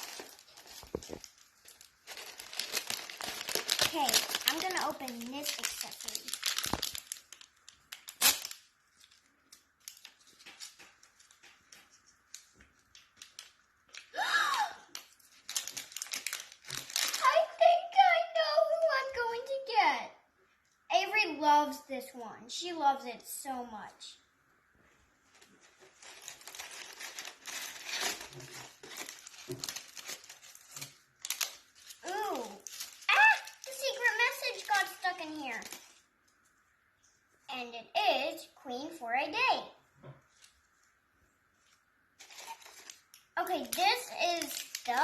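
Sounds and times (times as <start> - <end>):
plastic packaging crinkling: 0.0 - 17.7, 25.2 - 37.4, 40.2 - 45.0.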